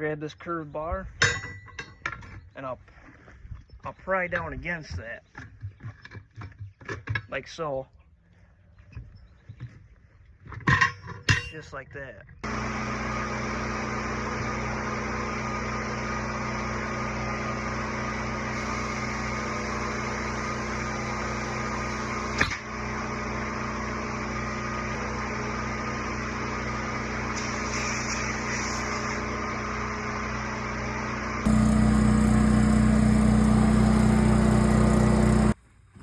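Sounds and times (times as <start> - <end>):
motor humming: 12.4 - 35.6.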